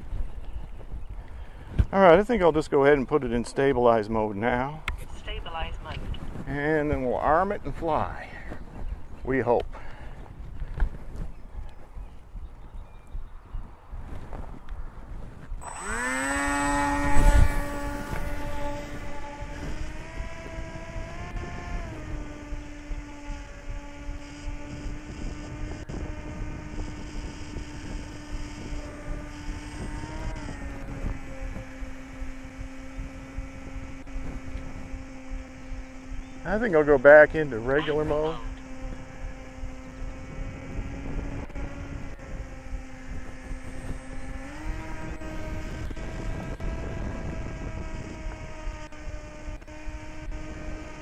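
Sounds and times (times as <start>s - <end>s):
wind rumbling on microphone: 0.0s - 51.0s
model airplane motor whining: 14.1s - 51.0s.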